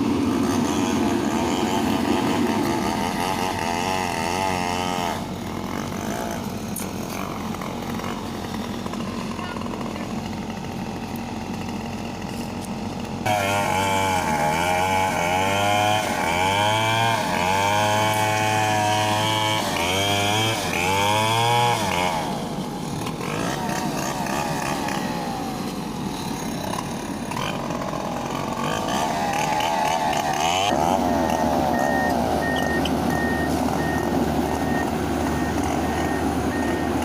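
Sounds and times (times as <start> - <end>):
small engine revving: 0.0 - 37.0
excavator travel alarm beeping: 31.0 - 37.0.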